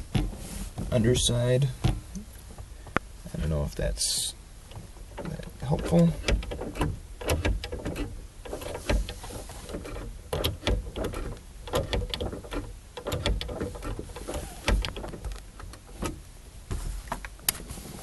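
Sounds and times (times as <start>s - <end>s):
light clicks of door lock mechanism: 9.7s - 16.2s.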